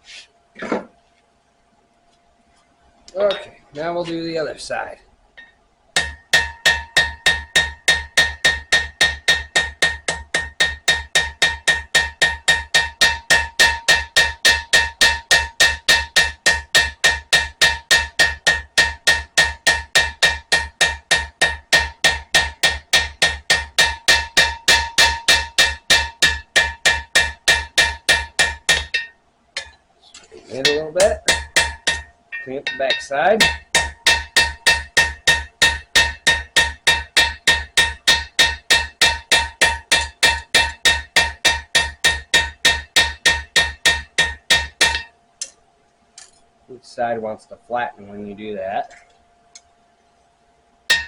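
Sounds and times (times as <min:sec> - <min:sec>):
hammer tapping metal blade: 0:05.4 - 0:29.8, 0:30.6 - 0:45.6.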